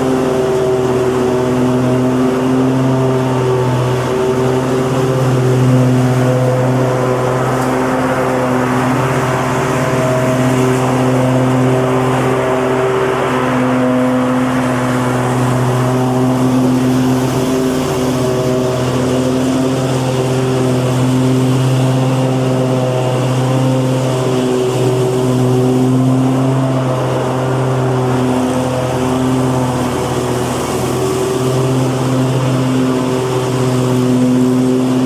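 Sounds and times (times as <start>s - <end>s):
lawn mower engine droning: 0.0s - 35.0s.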